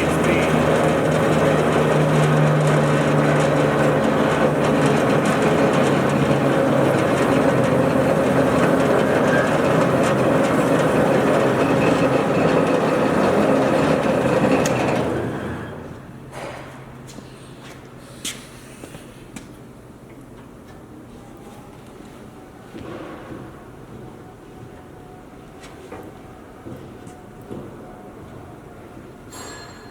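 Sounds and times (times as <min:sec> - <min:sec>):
bandsaw running: 0:00.0 - 0:15.6.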